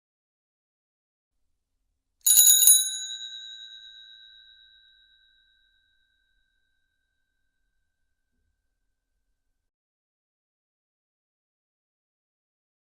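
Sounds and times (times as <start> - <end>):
bicycle bell trill: 2.3 - 6.5.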